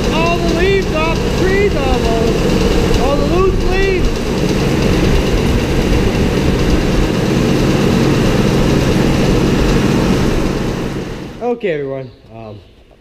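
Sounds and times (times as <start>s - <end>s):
feed grinder grinding: 0.0s - 11.4s
tractor engine running: 0.0s - 11.5s.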